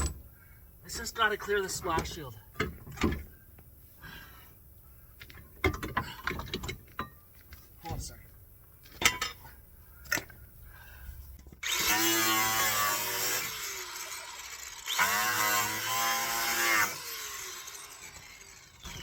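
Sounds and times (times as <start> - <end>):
power tool cutting plastic: 11.6 - 19.0.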